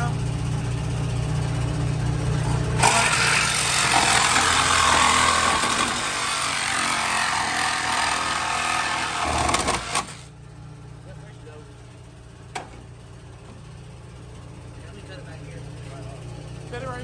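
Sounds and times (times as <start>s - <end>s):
power tool cutting metal: 2.8s - 10.3s.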